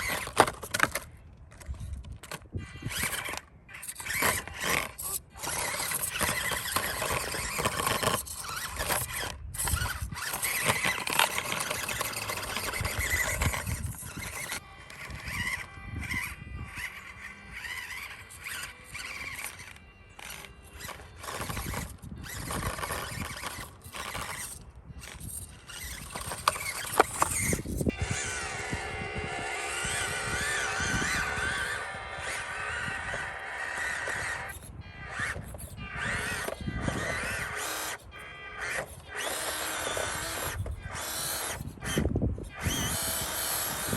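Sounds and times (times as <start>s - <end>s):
rc car motor whining: 0.0s - 43.9s
tyres scrabbling over ground: 0.0s - 43.9s.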